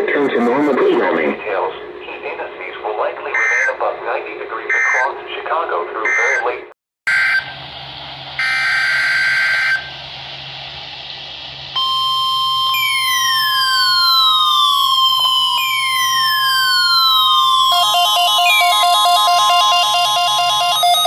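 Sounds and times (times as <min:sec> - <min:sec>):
radio hiss: 0:00.0 - 0:06.7
alternating electronic alarm: 0:03.3 - 0:03.7, 0:04.7 - 0:05.1, 0:06.1 - 0:07.6, 0:08.4 - 0:10.0, 0:11.8 - 0:21.0
steady high alarm tone: 0:03.3 - 0:03.7, 0:04.7 - 0:05.1, 0:06.1 - 0:06.5, 0:07.1 - 0:07.6, 0:08.4 - 0:10.0, 0:11.8 - 0:21.0
falling siren-like sweeps: 0:07.1 - 0:10.6, 0:11.7 - 0:21.0.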